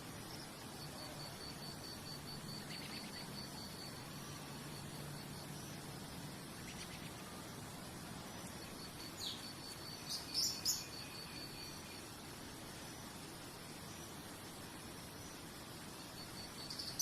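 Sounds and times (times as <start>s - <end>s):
high-pitched insect trill: 0.0s - 17.0s
low hiss: 0.0s - 17.0s
bird chirping: 8.3s - 12.0s.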